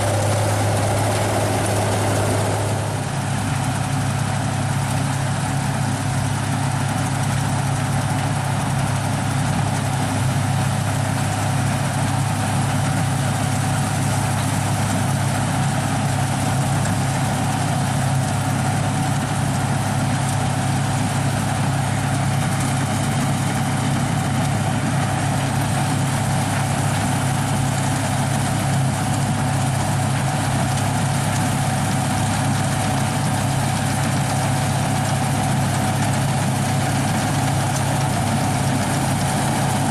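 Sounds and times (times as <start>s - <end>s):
thin whine: 0.0s - 4.0s
combine harvester engine drone: 0.0s - 39.9s.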